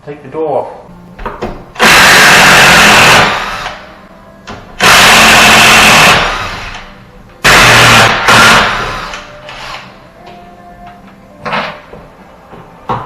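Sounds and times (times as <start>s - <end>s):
power drill driving screws: 1.8s - 3.8s, 4.8s - 6.8s, 7.4s - 9.8s.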